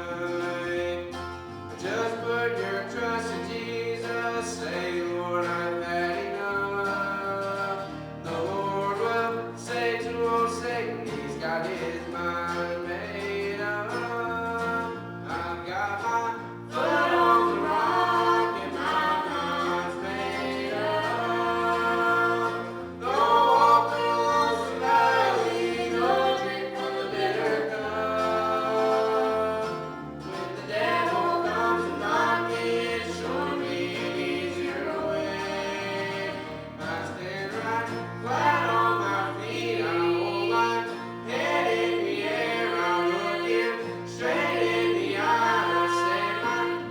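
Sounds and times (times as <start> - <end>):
gospel group singing: 0.0 - 46.9
guitar accompaniment: 0.0 - 46.9
walking bass line: 10.5 - 46.9.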